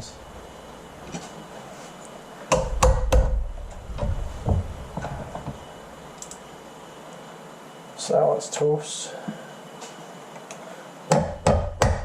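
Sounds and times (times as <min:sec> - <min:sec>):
sharp knocks: 0:02.5 - 0:05.6, 0:11.1 - 0:12.0.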